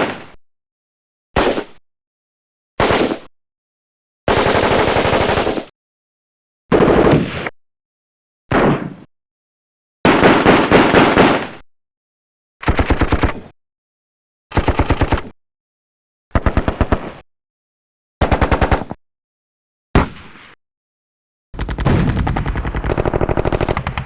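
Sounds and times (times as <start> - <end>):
machine-gun bursts: 12.6 - 13.5, 14.6 - 15.3, 21.6 - 24.0.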